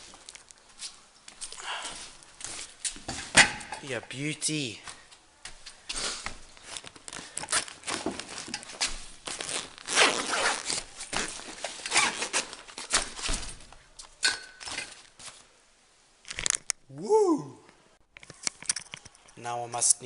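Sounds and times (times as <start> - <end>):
rustling and crinkling: 0.0 - 3.9, 4.8 - 15.6.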